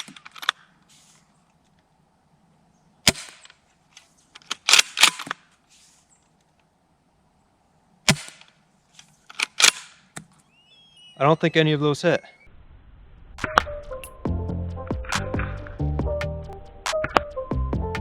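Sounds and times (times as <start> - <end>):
rifle bolt clacking: 9.3 - 10.0.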